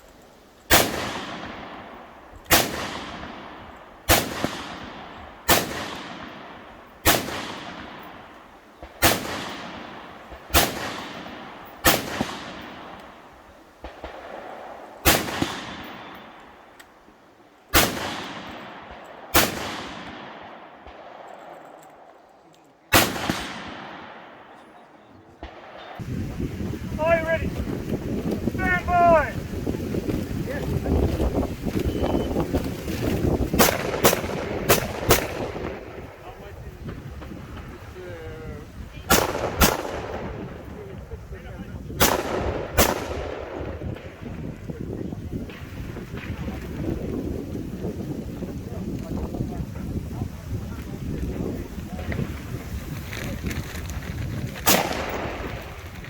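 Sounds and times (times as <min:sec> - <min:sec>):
rifle shots echoing: 0:00.7 - 0:17.1, 0:17.7 - 0:26.1, 0:32.8 - 0:37.9, 0:39.0 - 0:41.3, 0:41.9 - 0:44.6, 0:54.6 - 0:56.0.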